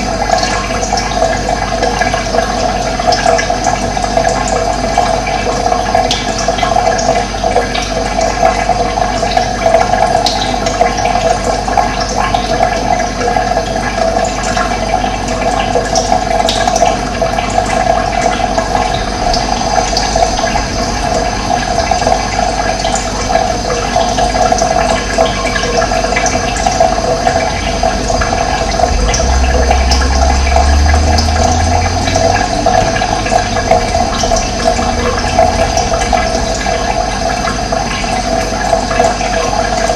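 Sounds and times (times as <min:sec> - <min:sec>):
rushing water: 0:00.0 - 0:39.9
low rumble: 0:17.8 - 0:23.9, 0:26.2 - 0:39.0.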